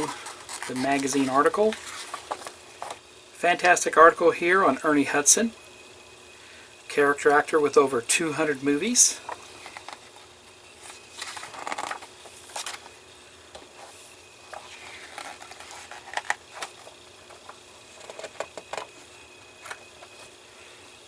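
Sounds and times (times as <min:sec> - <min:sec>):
magazine pages rustling: 0:00.0 - 0:03.0, 0:10.8 - 0:12.9, 0:14.5 - 0:18.7.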